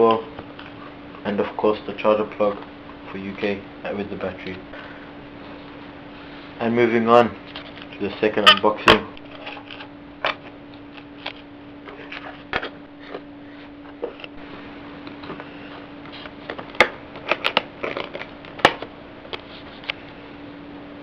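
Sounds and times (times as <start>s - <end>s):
faint steady hum: 0.0s - 21.0s
packaging crinkling and clicking: 16.5s - 18.9s.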